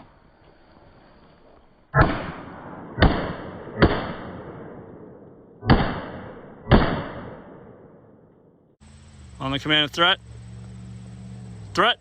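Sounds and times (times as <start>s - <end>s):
pistol shots with echo: 2.0s - 8.3s.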